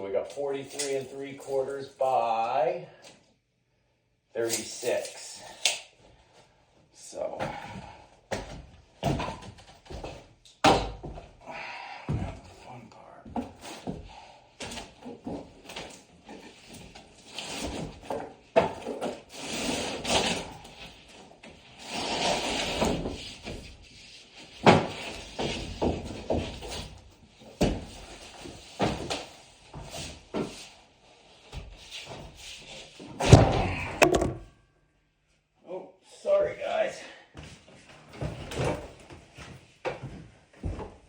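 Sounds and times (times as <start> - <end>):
wood knocks and clatters: 33.2 - 34.5.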